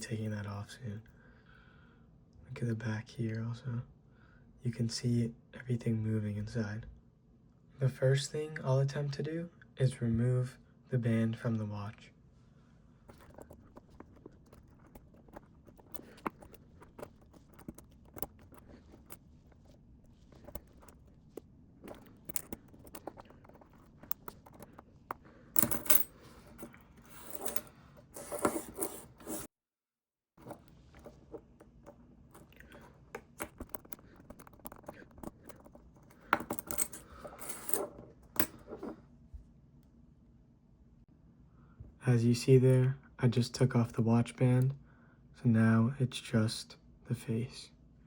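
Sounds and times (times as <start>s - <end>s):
metal watch band clinking: 13.1s - 24.8s, 25.5s - 29.5s, 31.8s - 38.8s.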